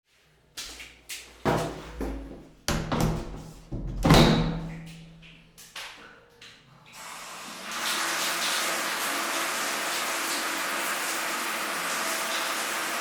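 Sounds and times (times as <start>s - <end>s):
knocks and clunks in shower cubicle: 1.5s - 5.4s.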